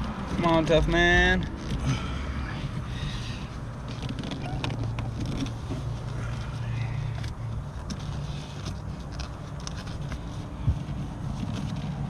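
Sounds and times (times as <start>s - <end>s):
steady low hum: 0.0s - 12.0s
plastic scraping: 3.8s - 12.0s.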